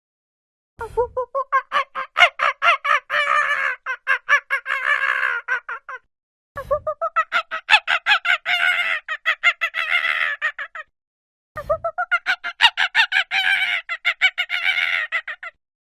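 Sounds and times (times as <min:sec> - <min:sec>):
monkey hooting and screeching: 0:01.5 - 0:06.1, 0:07.0 - 0:10.9, 0:12.0 - 0:15.6.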